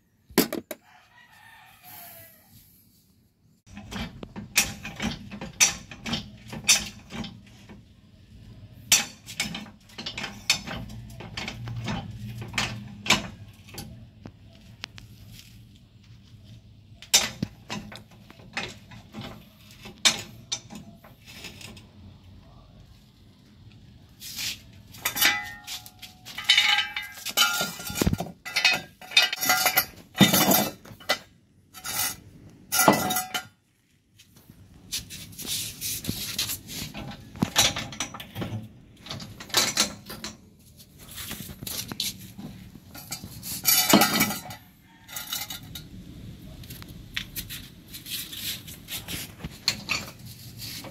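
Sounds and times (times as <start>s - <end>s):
metal tools clinking and clattering: 8.9s - 14.0s, 24.9s - 33.6s, 36.8s - 46.0s, 49.6s - 50.9s.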